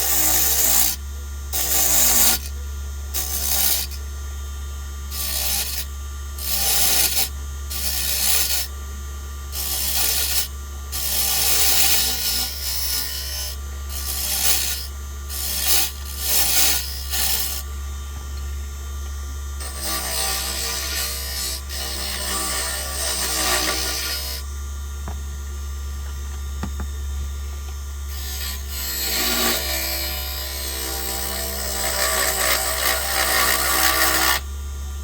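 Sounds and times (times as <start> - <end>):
tool scraping spinning wood: 0.0 - 4.1, 5.0 - 18.6, 19.6 - 25.2, 26.4 - 34.5
wood lathe humming: 0.0 - 4.1, 5.0 - 25.2, 26.6 - 34.5.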